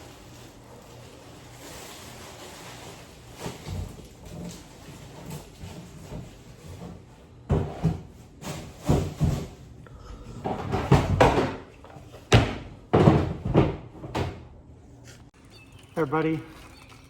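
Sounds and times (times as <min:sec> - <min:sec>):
knocks and thumps: 0:10.4 - 0:14.4.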